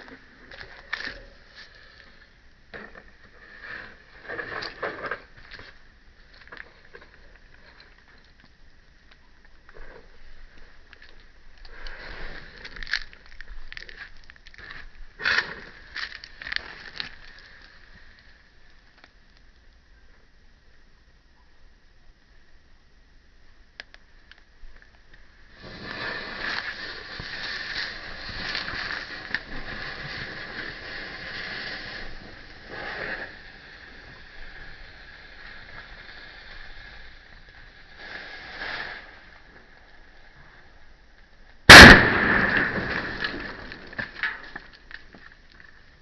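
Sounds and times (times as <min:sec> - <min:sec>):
faint steady high tone: 0:18.3 - 0:23.9
firecracker fuse hissing: 0:25.5 - 0:39.8, 0:41.7 - 0:44.0
firecracker bang: 0:41.7 - 0:44.1.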